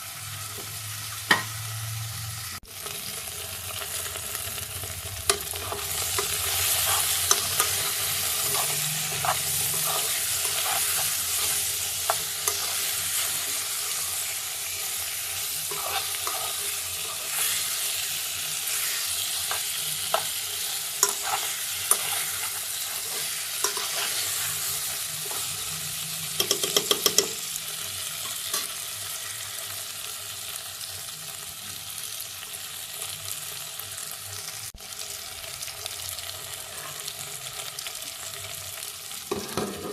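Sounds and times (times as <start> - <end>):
food sizzling in a pan: 0.0 - 39.9
utensil scraping and tapping pan: 26.4 - 27.4.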